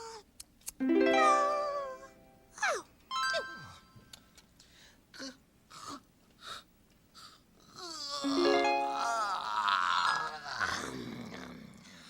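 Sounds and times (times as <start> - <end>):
music: 0.8 - 2.5, 3.1 - 4.2, 8.2 - 9.4
wheezy cartoon snoring: 10.0 - 12.0.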